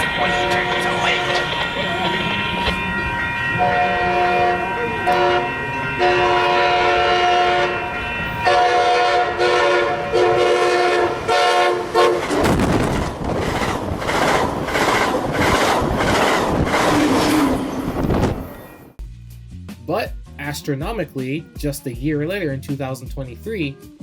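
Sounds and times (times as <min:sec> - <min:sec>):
train wheels clattering past: 0:00.0 - 0:08.7
train horn blasts: 0:00.0 - 0:12.4.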